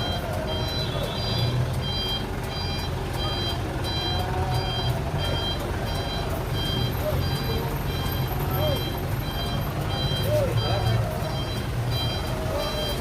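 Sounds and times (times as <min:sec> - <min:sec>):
bus engine hum: 0:00.0 - 0:13.0
electronic warning beeper: 0:00.0 - 0:13.0.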